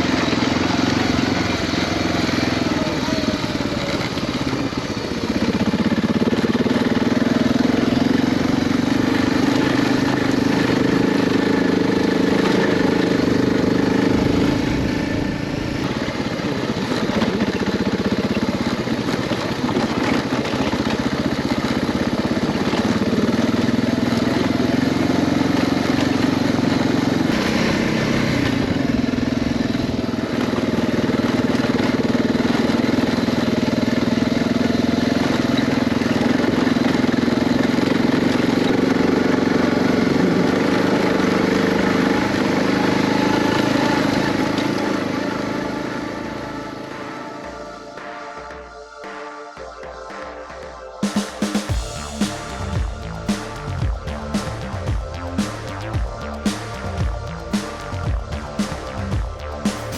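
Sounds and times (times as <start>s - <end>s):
motorcycle engine running: 0.0s - 49.2s, 51.0s - 59.9s
wind: 0.0s - 59.9s
tyre noise: 51.0s - 59.9s.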